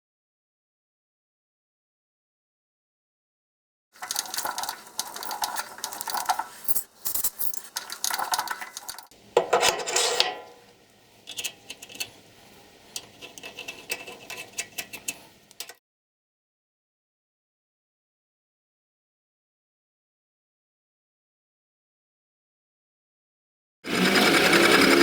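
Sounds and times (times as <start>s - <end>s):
metal parts clinking and scraping: 4.0s - 10.6s.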